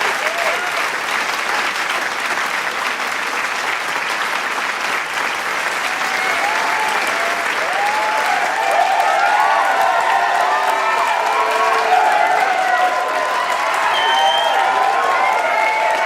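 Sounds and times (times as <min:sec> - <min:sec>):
voices cheering: 0:00.0 - 0:00.9, 0:05.8 - 0:16.0
crowd applauding: 0:00.0 - 0:16.0.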